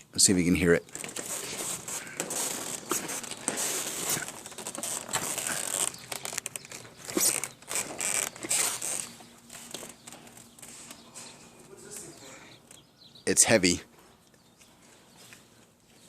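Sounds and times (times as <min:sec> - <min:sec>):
sediment crackling in water heater: 0:00.8 - 0:11.0.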